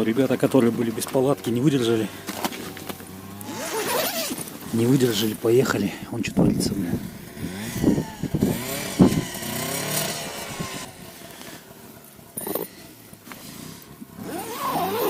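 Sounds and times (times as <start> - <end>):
vehicle engine revving: 2.3 - 5.3, 6.7 - 11.5, 12.4 - 15.0.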